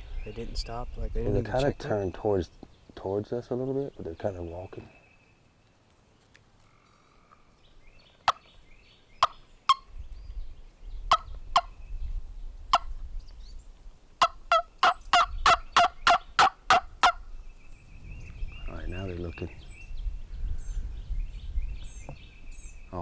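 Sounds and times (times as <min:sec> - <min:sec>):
turkey call yelps and clucks: 0:11.1 - 0:11.7, 0:14.2 - 0:17.2.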